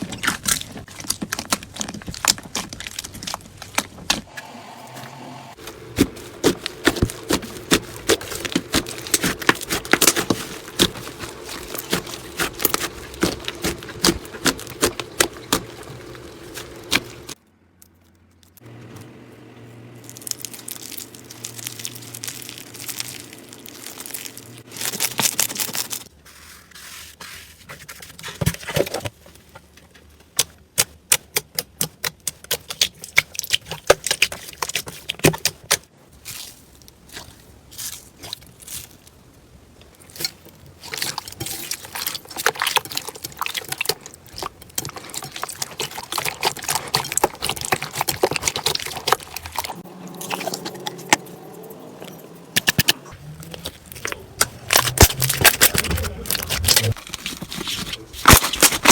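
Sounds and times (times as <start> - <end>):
slime crackling and popping: 5.7 - 17.4, 20.0 - 26.1, 40.0 - 51.3, 52.6 - 58.9.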